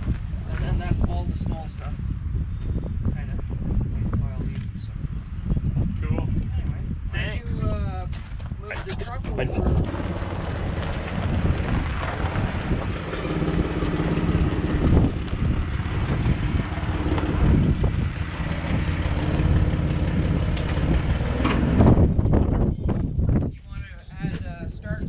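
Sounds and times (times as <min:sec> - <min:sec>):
truck engine running: 0:09.0 - 0:22.5.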